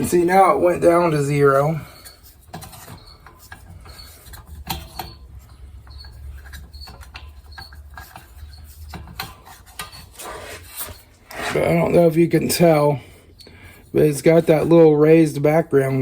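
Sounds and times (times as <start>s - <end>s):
faint squeaks: 0.0s - 14.6s.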